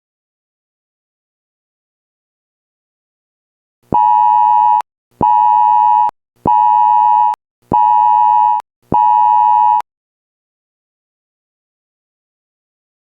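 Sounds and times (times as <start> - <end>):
electronic alert tone beeping: 3.9 - 9.8.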